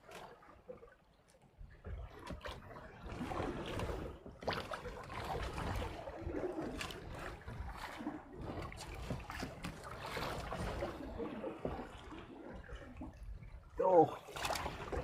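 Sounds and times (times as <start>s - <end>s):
water splashing against boat hull: 0.0s - 15.0s
wind rumbling on microphone: 1.7s - 13.8s.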